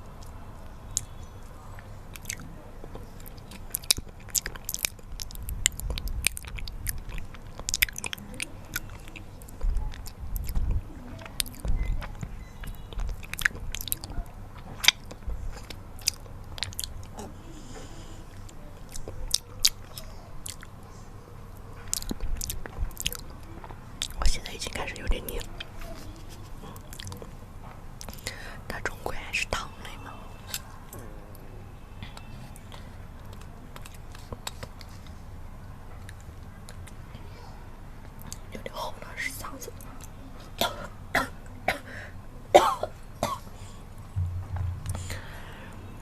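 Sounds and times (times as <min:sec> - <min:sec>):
chewing and biting: 0:02.1 - 0:17.4, 0:18.3 - 0:20.8, 0:21.8 - 0:25.8
sticky mouth clicks: 0:02.1 - 0:20.8, 0:21.8 - 0:25.8.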